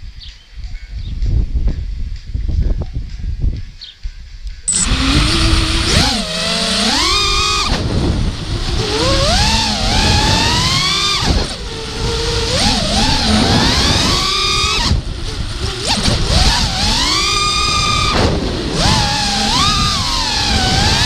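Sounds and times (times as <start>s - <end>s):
quadcopter motors whining: 4.7s - 21.0s.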